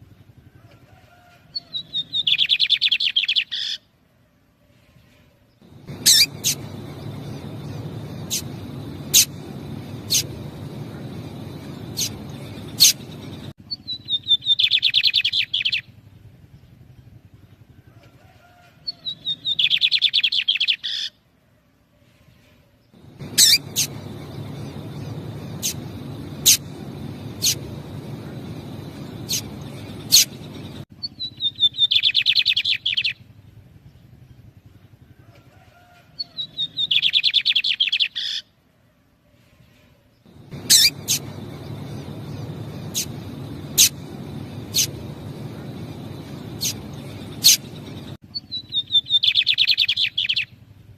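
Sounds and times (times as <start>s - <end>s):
trilled birdsong: 5.6s - 15.9s, 22.9s - 33.2s, 36.2s - 38.4s, 40.1s - 50.6s
sharp bird call notes: 5.8s - 13.4s, 23.2s - 30.8s, 40.4s - 48.1s.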